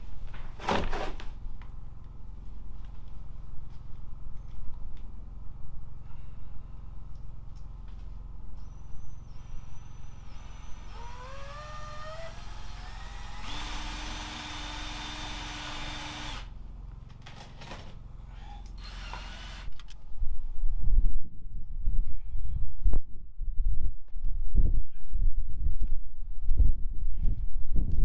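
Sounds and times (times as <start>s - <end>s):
power drill running: 8.6s - 16.5s, 18.3s - 19.9s.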